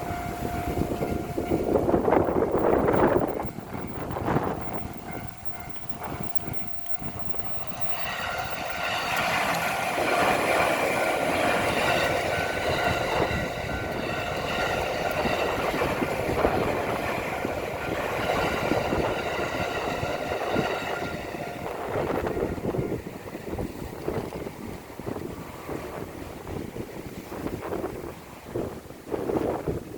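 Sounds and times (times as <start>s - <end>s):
electronic crossing warning bell: 0.0s - 23.0s
train wheels clattering over rails: 0.0s - 26.7s.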